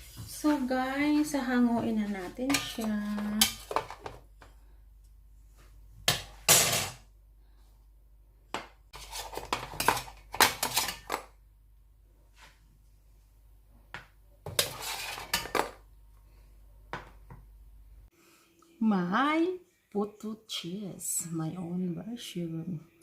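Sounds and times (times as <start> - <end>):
kitchenware clattering: 1.8 - 4.3, 6.1 - 7.0, 8.6 - 11.3, 14.4 - 15.8.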